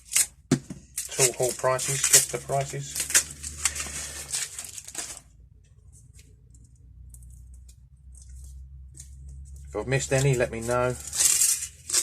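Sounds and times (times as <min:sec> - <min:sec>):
tools and packaging rustling: 0:00.0 - 0:05.3, 0:07.7 - 0:12.0.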